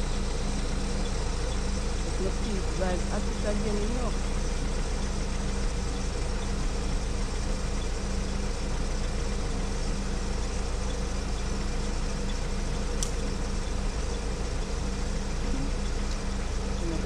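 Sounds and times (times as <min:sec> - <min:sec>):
low mechanical drone: 0:00.0 - 0:17.0
faint click: 0:13.0 - 0:13.2.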